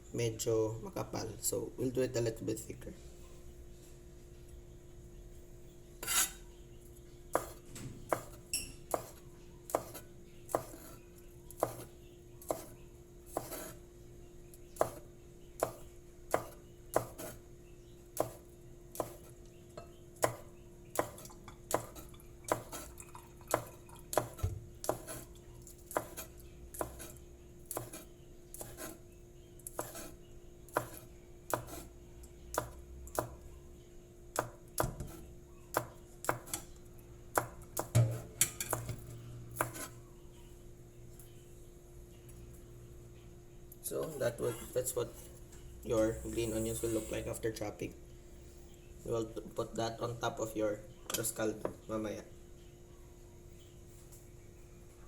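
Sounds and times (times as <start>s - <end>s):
knife chopping on cutting board: 7.3s - 11.0s, 11.6s - 12.7s, 13.3s - 13.8s, 14.8s - 15.0s, 15.6s - 17.4s, 18.2s - 19.3s, 20.2s - 22.9s, 23.5s - 25.3s, 25.9s - 29.0s, 29.6s - 31.9s, 32.5s - 33.4s, 34.4s - 36.6s, 37.4s - 39.0s, 39.6s - 39.9s.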